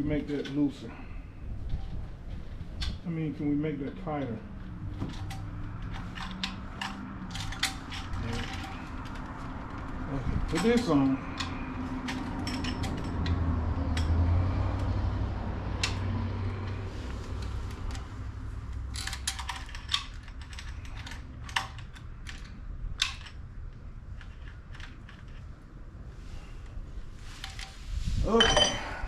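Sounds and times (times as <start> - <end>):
metal parts clicking: 5.0 - 14.2, 18.7 - 23.4, 24.1 - 25.5.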